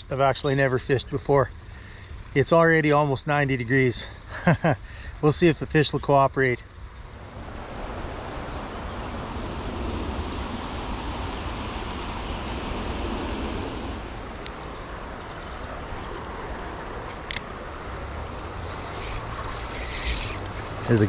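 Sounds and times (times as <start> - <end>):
creek water flowing: 7.0 - 21.0.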